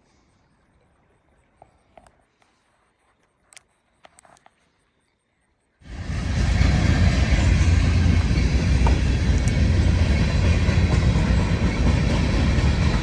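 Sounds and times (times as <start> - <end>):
train rumbling on rails: 5.8 - 13.0.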